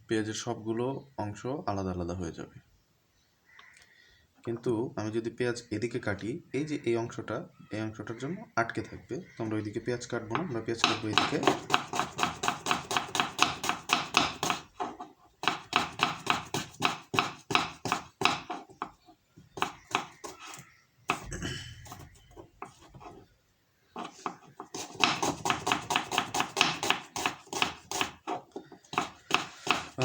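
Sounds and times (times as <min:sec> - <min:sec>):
knife chopping onion on cutting board: 0:10.3 - 0:19.0, 0:19.6 - 0:21.2, 0:24.0 - 0:30.0.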